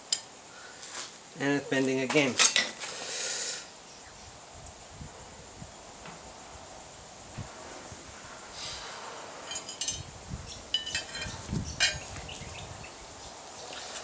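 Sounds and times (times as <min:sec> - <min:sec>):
small steel pieces clinking: 0:09.5 - 0:10.1, 0:10.7 - 0:12.1.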